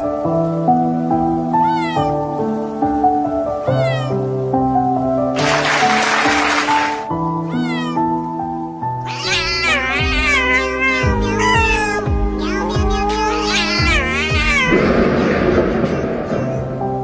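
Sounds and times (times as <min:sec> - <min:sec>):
slow keyboard music: 0:00.0 - 0:17.0
cat meowing: 0:01.4 - 0:02.4, 0:03.5 - 0:04.4, 0:07.3 - 0:08.3, 0:09.0 - 0:16.7
cat hissing: 0:01.6 - 0:02.2, 0:03.6 - 0:04.3, 0:05.4 - 0:08.2, 0:09.1 - 0:17.0.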